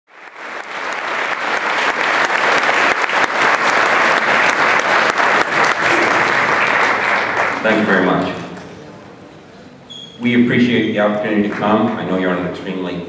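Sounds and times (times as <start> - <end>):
audience applauding: 0.1 - 8.9.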